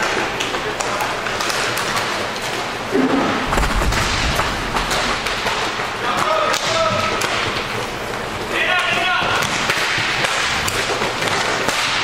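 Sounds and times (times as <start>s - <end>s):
clatter of sticks puck and skates: 0.0s - 3.4s, 4.0s - 12.0s
heavy thud: 3.0s - 6.1s.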